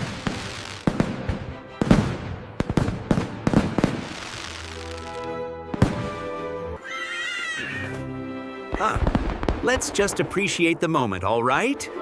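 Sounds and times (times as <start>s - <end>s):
fireworks bangs with crackling hiss: 0.0s - 6.2s, 8.7s - 10.5s
background music chord: 0.0s - 6.8s, 7.8s - 9.1s, 10.2s - 12.0s.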